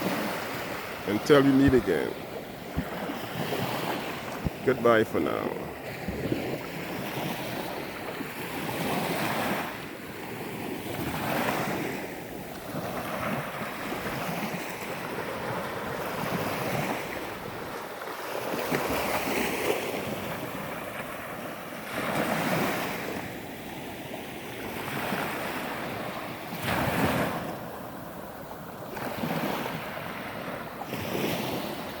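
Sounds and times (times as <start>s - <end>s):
wind buffeting microphone: 0.0s - 8.9s
waves washing onto beach: 0.0s - 32.0s.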